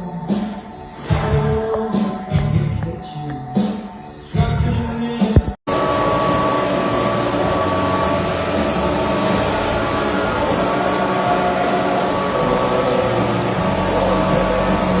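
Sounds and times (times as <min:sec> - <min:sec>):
workshop machine running: 0:05.7 - 0:15.0.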